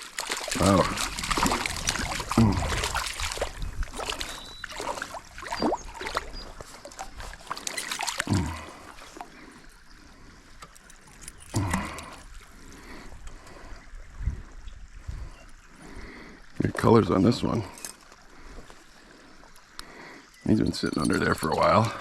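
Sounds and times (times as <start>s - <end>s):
fish splashing in water: 0.0s - 9.4s
stream running: 0.0s - 22.0s.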